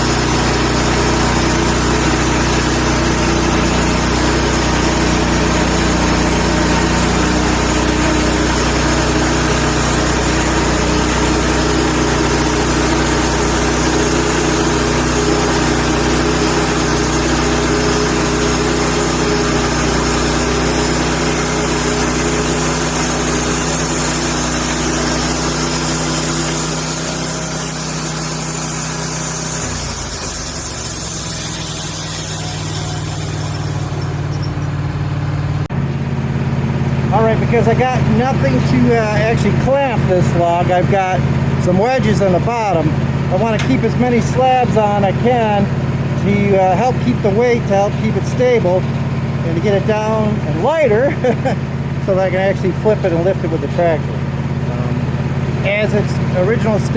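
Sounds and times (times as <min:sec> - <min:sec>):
engine running steadily: 0:00.0 - 0:56.9
hiss: 0:07.1 - 0:34.6.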